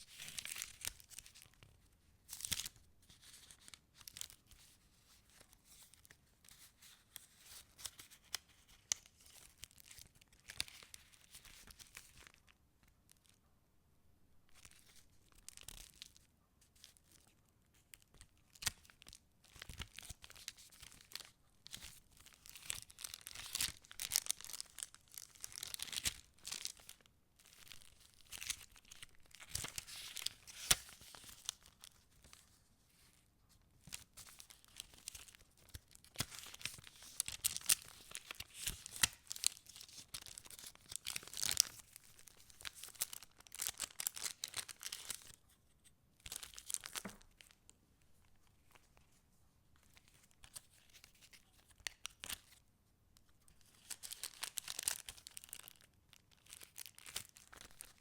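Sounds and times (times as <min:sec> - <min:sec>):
paper pages rustling: 0:27.9 - 0:33.2, 0:33.8 - 0:45.4.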